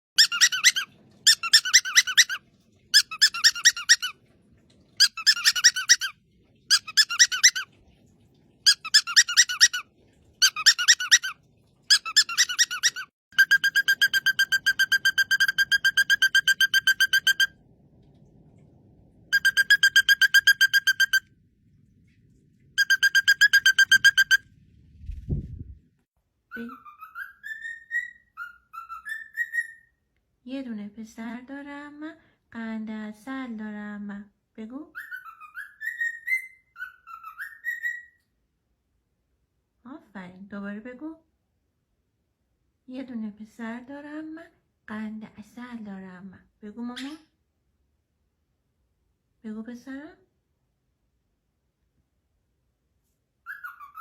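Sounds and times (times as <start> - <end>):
parrot squeaky calls: 0.2 - 2.4, 3.0 - 4.1, 5.0 - 6.1, 6.7 - 7.7, 8.7 - 9.8, 10.4 - 17.5, 19.4 - 21.2, 22.8 - 24.4, 26.5 - 30.0, 35.0 - 38.2, 53.4 - 54.0.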